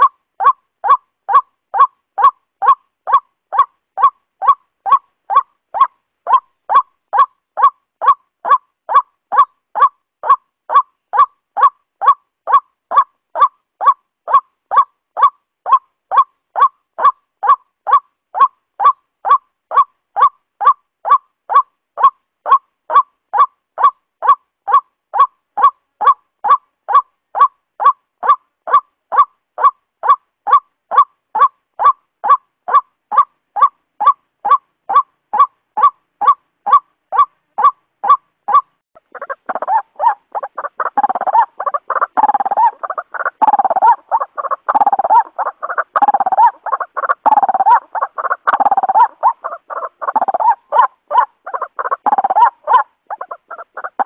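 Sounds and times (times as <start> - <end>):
waterhen calling: 0.0 - 54.0.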